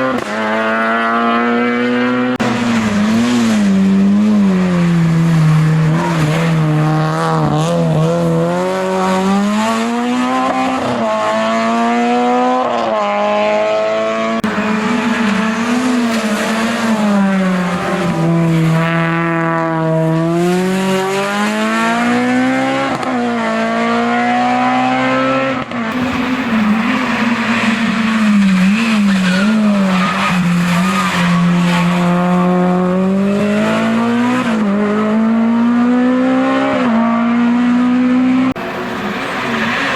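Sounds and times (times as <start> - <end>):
race car engine revving: 0.0 - 39.9.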